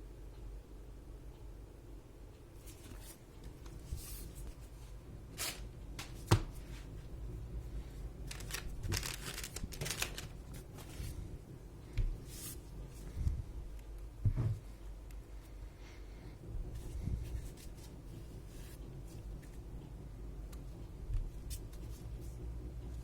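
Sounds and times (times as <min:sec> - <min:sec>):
packaging clicks: 0:08.3 - 0:10.4
paper and plastic rustling: 0:08.3 - 0:11.3.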